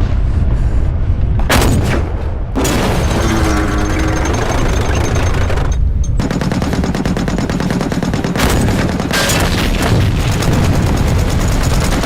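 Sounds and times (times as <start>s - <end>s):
low rumble: 0.0s - 6.8s
machine-gun fire: 1.5s - 12.0s.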